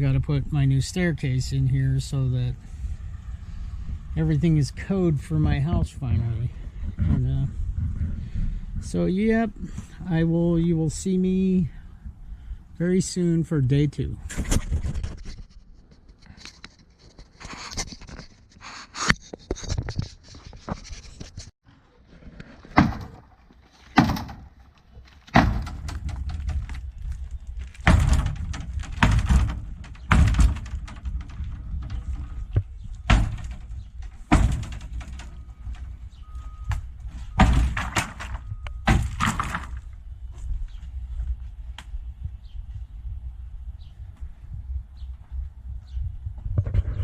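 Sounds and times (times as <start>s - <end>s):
heavy knocks on wood: 24.0s - 24.5s, 25.3s - 26.8s, 27.8s - 32.0s, 33.1s - 35.3s, 37.4s - 39.7s.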